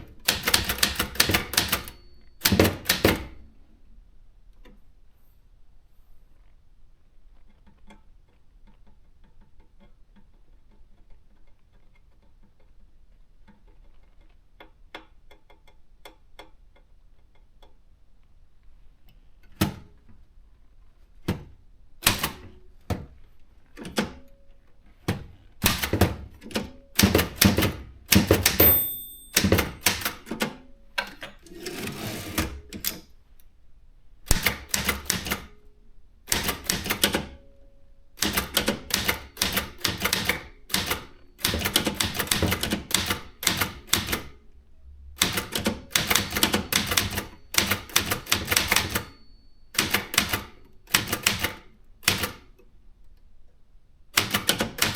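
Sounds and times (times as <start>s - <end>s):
typewriter rattling: 0.0s - 3.4s, 25.6s - 30.5s, 38.2s - 44.3s, 45.2s - 49.2s
typewriter key strikes: 0.0s - 3.5s, 25.6s - 33.0s, 34.3s - 35.5s, 36.3s - 37.4s, 38.2s - 44.4s, 45.2s - 52.5s, 54.2s - 54.9s.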